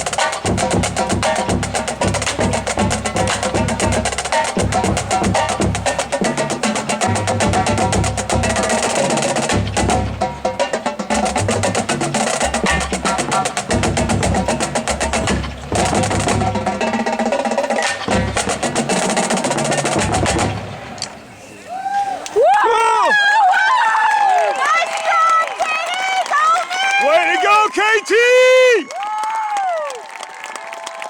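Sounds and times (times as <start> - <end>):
tuned bass drums: 0.0 - 21.0
rapid snare drum strokes: 0.0 - 21.2.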